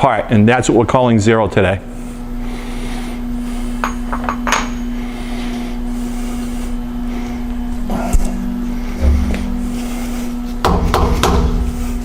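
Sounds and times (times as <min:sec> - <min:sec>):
milling machine hum: 0:01.7 - 0:12.0.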